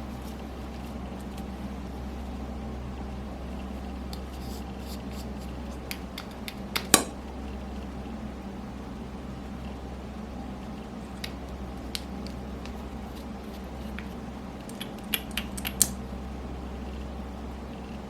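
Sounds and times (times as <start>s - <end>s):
steady low hum: 0.0s - 18.0s
slime clicking and popping: 14.6s - 16.0s.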